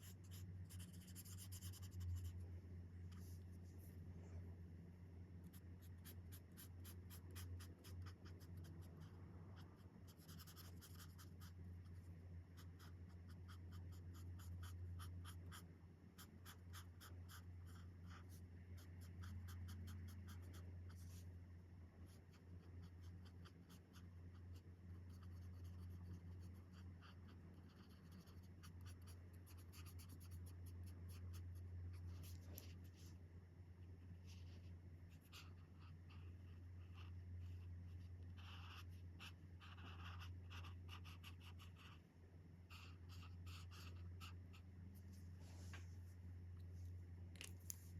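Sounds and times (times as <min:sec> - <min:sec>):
steady low hum: 0:00.0 - 0:47.9
marker tips scratching on paper: 0:35.2 - 0:42.0.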